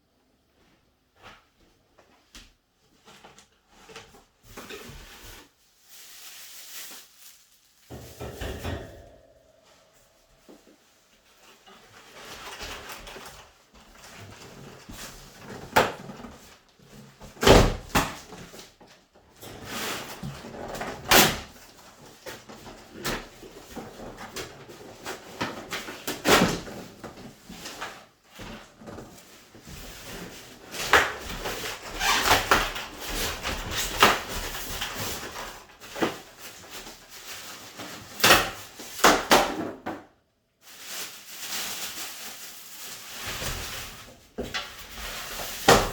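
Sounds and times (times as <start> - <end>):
rustling: 2.9 - 13.4, 40.6 - 45.9
knocks and bumps: 7.9 - 9.8.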